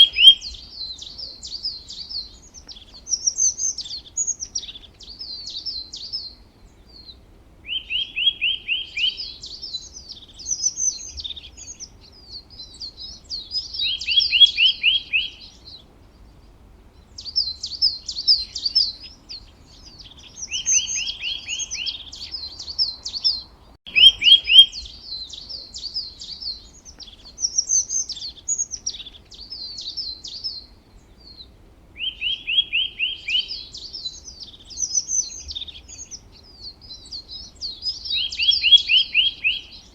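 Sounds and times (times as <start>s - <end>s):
fast bird trill: 0.0s - 0.6s, 17.2s - 26.6s
songbirds singing: 0.0s - 39.9s.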